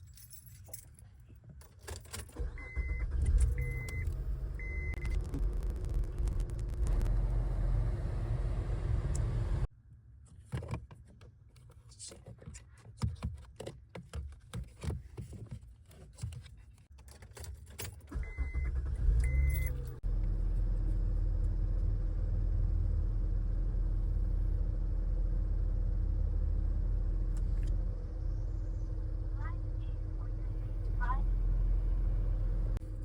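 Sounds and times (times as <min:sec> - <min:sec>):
keys jangling: 0:00.0 - 0:02.4
car engine starting and idling: 0:02.4 - 0:09.7, 0:18.1 - 0:33.0.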